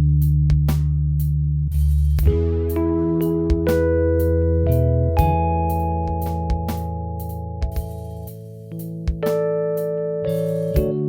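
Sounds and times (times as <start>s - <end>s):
light regular beat: 0.2s - 4.4s, 5.2s - 9.6s, 10.3s - 11.0s
held keyboard chords: 2.2s - 11.0s.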